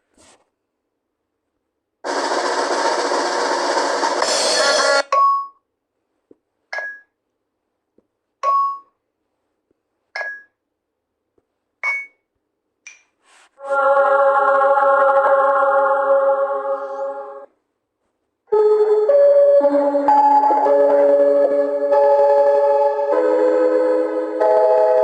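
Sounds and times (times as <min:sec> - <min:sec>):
held chord-like tone: 0:18.5 - 0:25.0.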